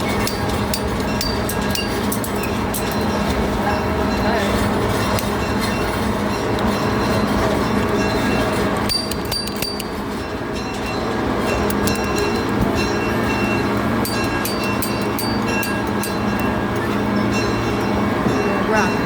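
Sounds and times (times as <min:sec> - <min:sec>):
train rumbling on track: 0:00.0 - 0:19.0
sharp clicks and rattles: 0:08.8 - 0:10.0.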